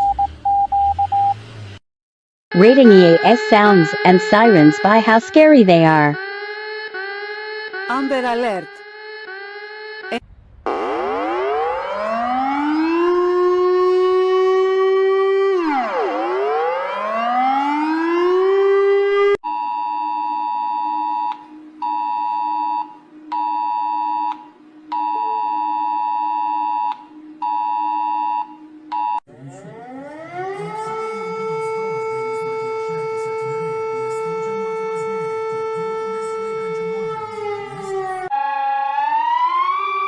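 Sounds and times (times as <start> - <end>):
siren sliding up and down: 2.5 - 19.3, 21.3 - 40.0
alarm siren wailing: 2.5 - 40.0
pulsing high alert tones: 2.6 - 6.2, 7.9 - 8.8
low warbling tone: 10.1 - 14.4.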